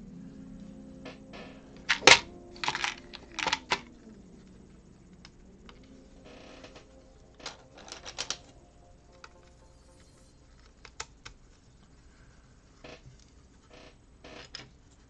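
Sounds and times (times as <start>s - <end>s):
plastic bricks clicking: 1.8s - 3.9s.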